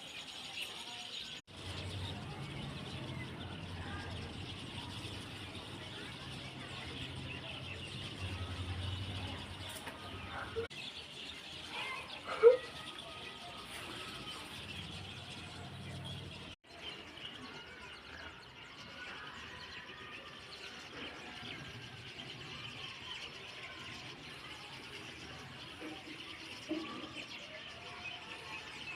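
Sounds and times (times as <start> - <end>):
small birds chirping: 0.0 - 28.9.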